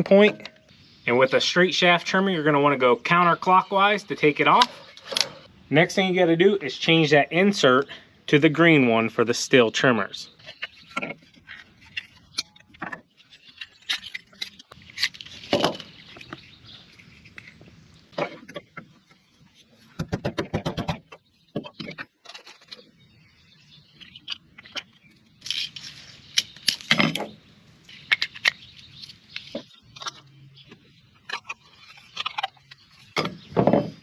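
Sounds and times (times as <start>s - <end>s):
plastic parts clicking and scraping: 4.2s - 5.5s, 10.3s - 23.0s, 23.9s - 34.0s.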